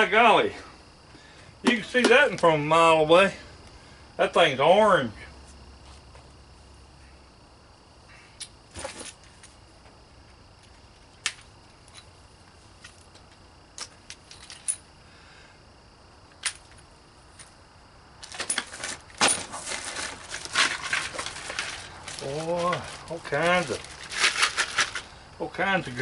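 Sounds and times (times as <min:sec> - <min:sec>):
packaging rattling and crinkling: 0:18.2 - 0:25.1.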